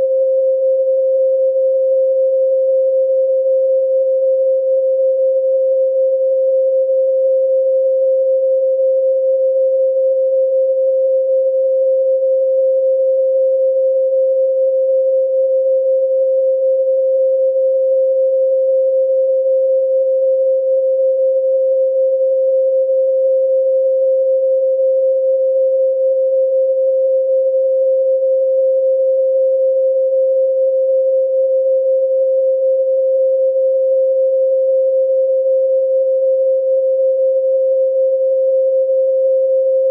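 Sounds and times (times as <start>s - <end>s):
pure sine tone: 0.0s - 39.9s.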